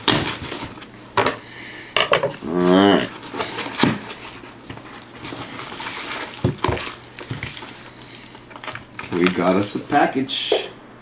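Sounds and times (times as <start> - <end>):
cardboard rustling and scraping: 0.0 - 0.9, 2.2 - 10.2.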